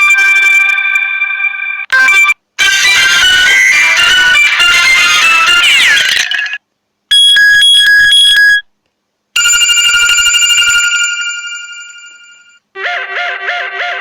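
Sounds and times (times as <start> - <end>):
electronic beeping ringtone: 0.0 - 8.6
bell-like chime ringtone: 9.4 - 12.6.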